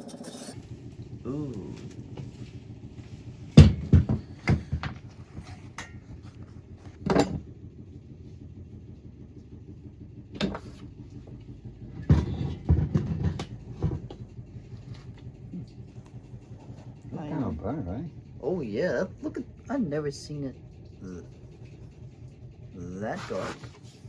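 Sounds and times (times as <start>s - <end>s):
metal tools clinking: 0.0s - 0.6s
steady low hum: 0.0s - 24.0s.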